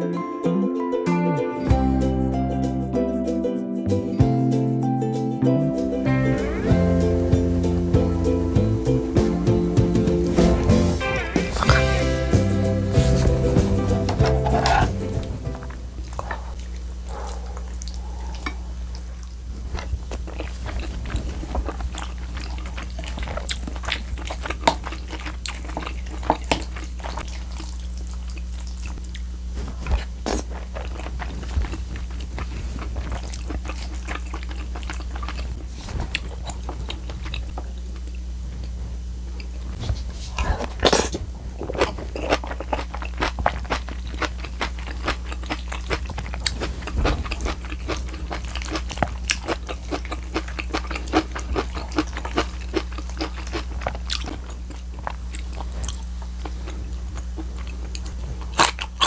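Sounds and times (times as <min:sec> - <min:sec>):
steady low hum: 0:05.6 - 0:59.0
chewing and crunching: 0:07.0 - 0:59.0
mouth clicks: 0:11.4 - 0:15.3.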